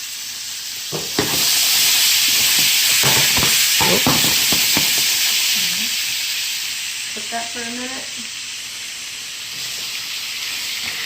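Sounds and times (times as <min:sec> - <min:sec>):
shrimp sizzling in a pan: 0:00.0 - 0:11.0
utensil knocking against pan: 0:00.9 - 0:01.5, 0:02.4 - 0:05.2.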